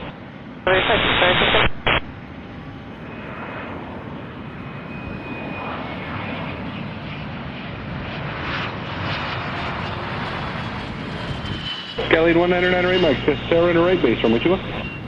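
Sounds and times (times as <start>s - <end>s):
jet engine rush: 0.0s - 15.0s
faint thin whine: 12.0s - 15.0s.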